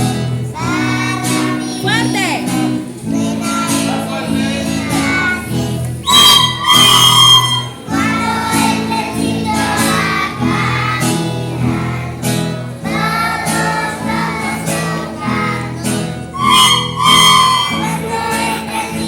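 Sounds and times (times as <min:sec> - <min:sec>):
children singing together: 0:00.0 - 0:01.9, 0:02.8 - 0:19.0
instrumental accompaniment: 0:00.0 - 0:19.0
held flute note: 0:06.0 - 0:08.1, 0:16.4 - 0:18.5.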